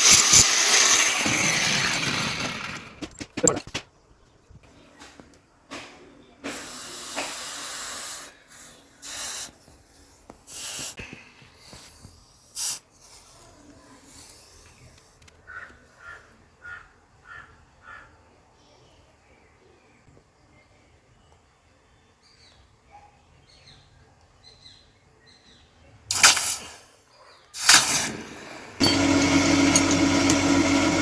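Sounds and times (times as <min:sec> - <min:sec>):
hissing bursts: 0:06.4 - 0:15.2, 0:26.1 - 0:26.9, 0:27.6 - 0:31.0.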